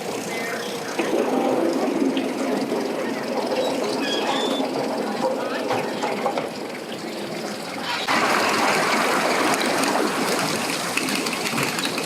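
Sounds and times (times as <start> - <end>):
water gushing and splashing: 0.0 - 12.0.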